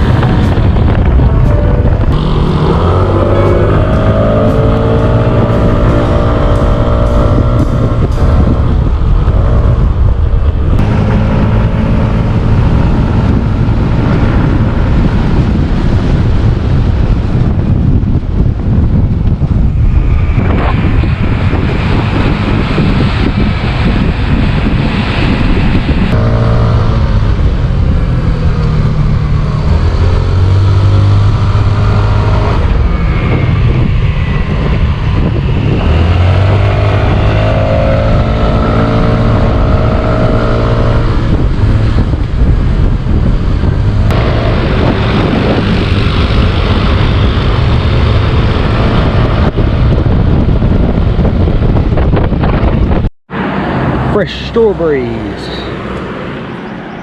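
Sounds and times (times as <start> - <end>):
motor scooter engine running: 0.0 - 9.7
wind rush on microphone: 0.0 - 57.0.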